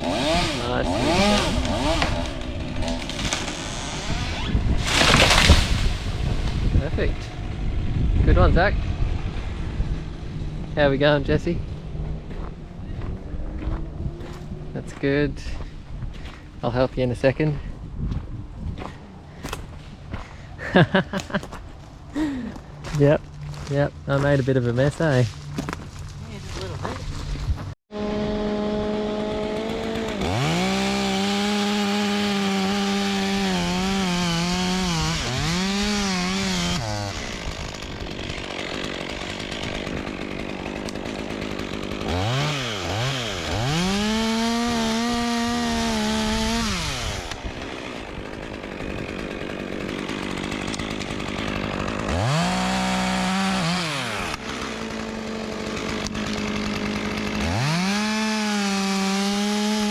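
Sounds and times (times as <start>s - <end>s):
chainsaw revving: 0.0s - 10.9s, 27.9s - 59.9s.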